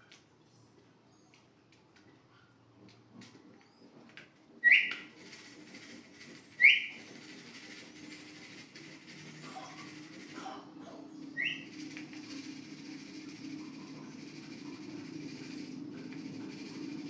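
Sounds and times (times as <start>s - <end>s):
loud rising whistles: 4.6s - 5.2s, 6.5s - 7.2s, 11.2s - 17.0s.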